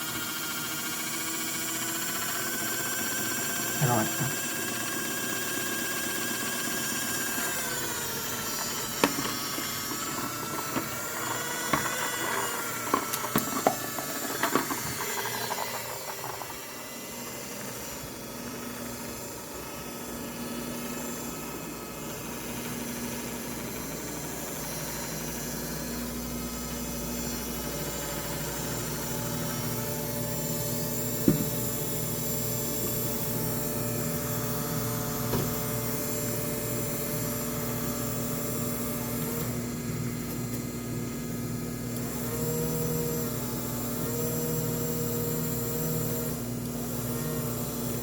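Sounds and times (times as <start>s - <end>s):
washing machine motor whining: 0.0s - 48.0s
sharp knocks: 31.2s - 31.6s.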